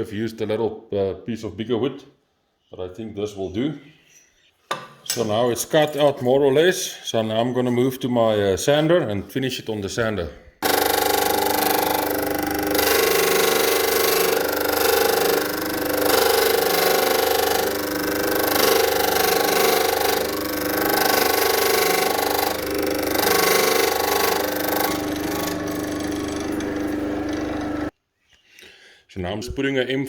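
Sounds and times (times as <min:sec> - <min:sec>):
power sander sanding acrylic: 0:10.6 - 0:27.9.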